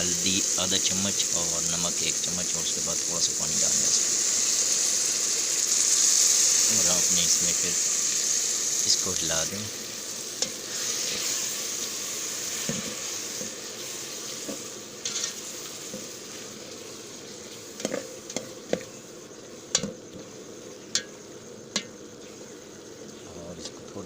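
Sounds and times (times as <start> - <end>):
masala sizzling in a pan: 0.0 - 24.0
spoon knocking and scraping pan: 12.6 - 13.6, 14.4 - 16.2, 17.8 - 19.0, 19.7 - 20.2.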